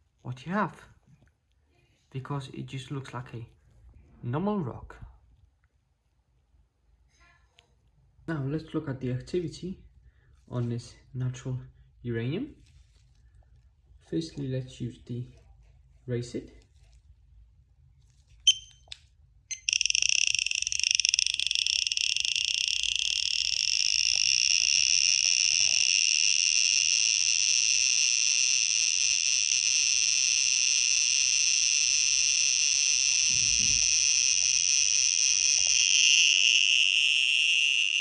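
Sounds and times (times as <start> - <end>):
radiation detector beep: 18.5 - 18.8, 19.5 - 38.0
high-pitched detector buzz: 19.5 - 38.0.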